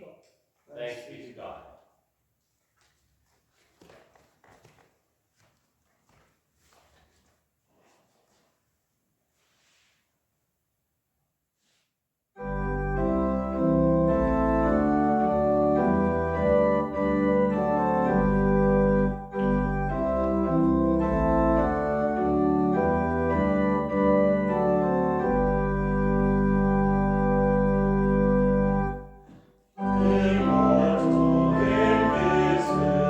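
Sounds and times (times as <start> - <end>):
organ playing sustained chords: 12.4 - 33.0.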